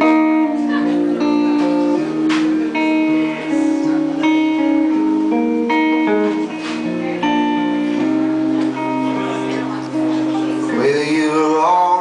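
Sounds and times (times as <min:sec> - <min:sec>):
live band playing slow ballad: 0:00.0 - 0:12.0
strummed guitar chords: 0:00.0 - 0:12.0.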